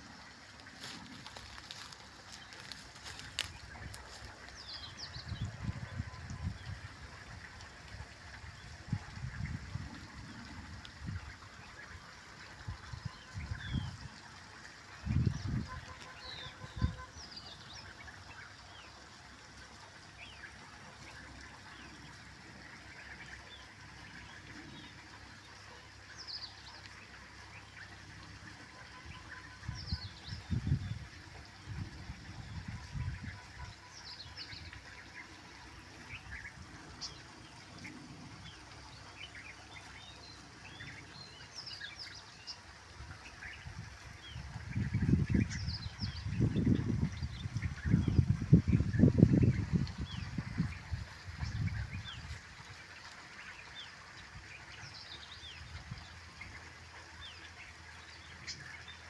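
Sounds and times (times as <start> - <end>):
small birds chirping: 0.7 - 5.5.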